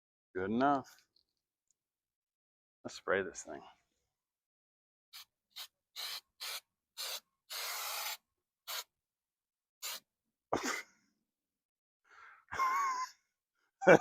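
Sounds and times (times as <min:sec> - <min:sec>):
spray can hissing bursts: 0:05.2 - 0:08.9, 0:09.8 - 0:10.1.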